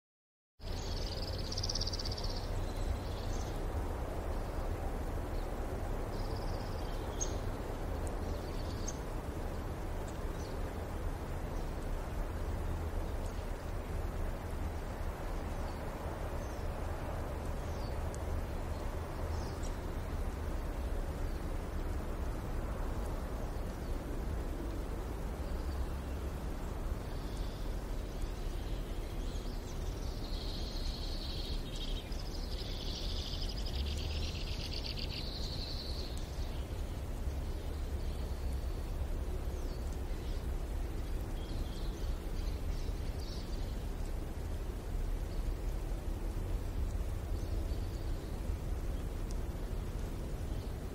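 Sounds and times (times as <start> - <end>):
distant traffic hum: 0.6 - 50.9
small birds chirping: 0.6 - 50.9.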